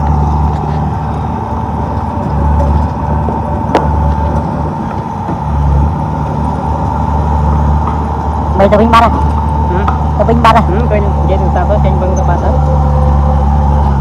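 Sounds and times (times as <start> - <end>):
bulldozer engine rumbling: 0.0 - 14.0.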